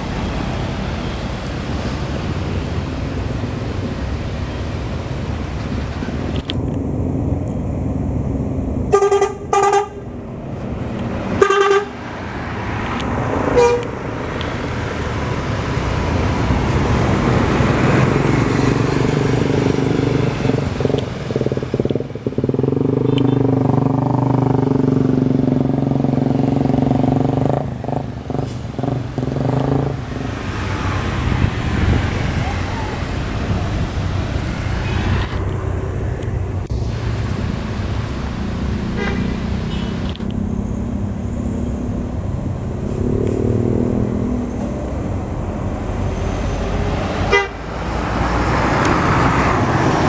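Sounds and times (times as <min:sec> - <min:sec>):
heavy bus engine droning: 0:00.0 - 0:50.0
bus air horn toots: 0:08.9 - 0:10.2, 0:11.2 - 0:12.2, 0:13.4 - 0:14.1, 0:38.8 - 0:40.2, 0:47.1 - 0:47.9.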